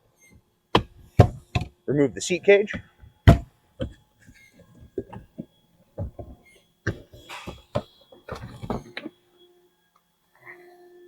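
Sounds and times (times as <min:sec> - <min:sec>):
clicks and knocks of metal pipes: 0:02.8 - 0:09.1.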